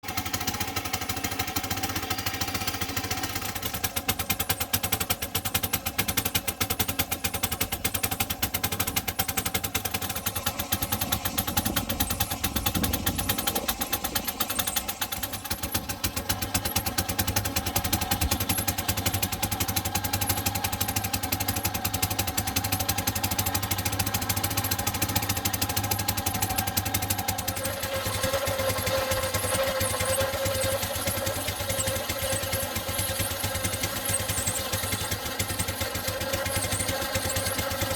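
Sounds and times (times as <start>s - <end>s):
miniature steam engine running: 0.0s - 37.9s
model sawmill whine: 0.1s - 37.9s.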